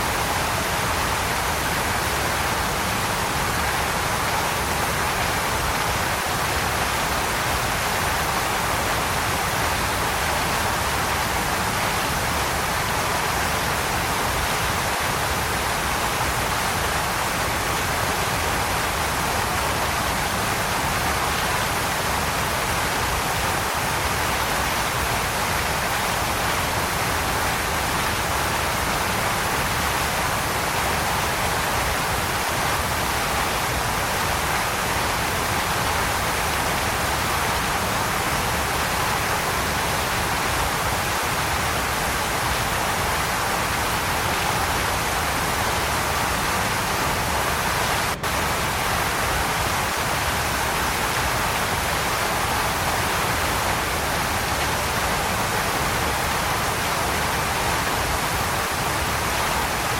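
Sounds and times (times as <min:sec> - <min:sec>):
waterfall rushing: 0:00.0 - 0:59.9.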